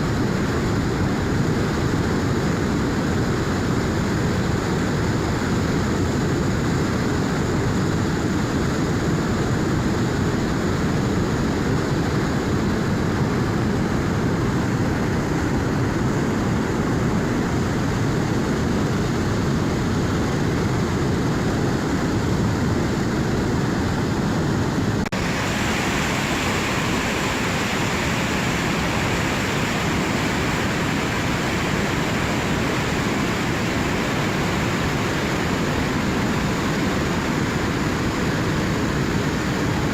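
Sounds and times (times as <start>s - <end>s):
river water rushing: 0.0s - 39.9s.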